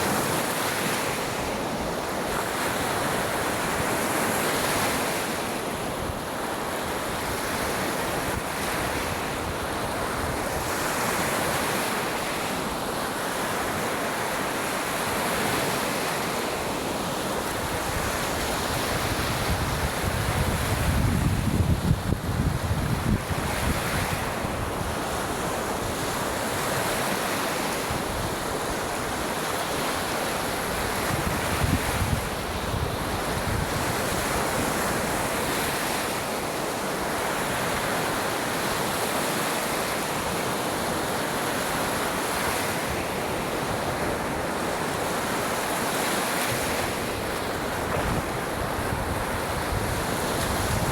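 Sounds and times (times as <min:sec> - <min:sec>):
waves breaking on beach: 0:00.0 - 0:50.9
wind buffeting microphone: 0:17.7 - 0:25.0, 0:47.8 - 0:50.9.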